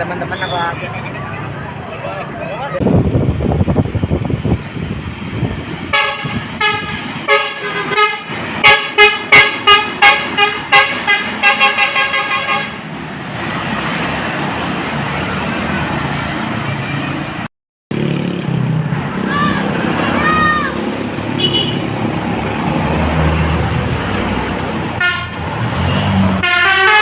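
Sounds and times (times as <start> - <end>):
vehicle noise: 0.0 - 27.0
musical bus horn: 5.9 - 12.9, 21.4 - 21.8, 25.0 - 27.0.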